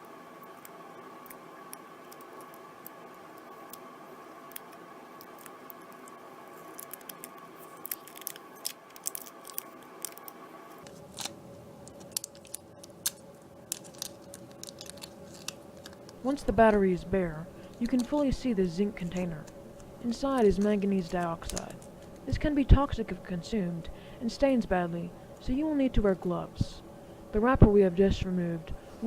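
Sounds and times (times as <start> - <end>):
steady background hum: 0.0 - 29.0
wrapper peeling crackles: 0.6 - 16.3, 17.7 - 18.3, 19.0 - 22.3.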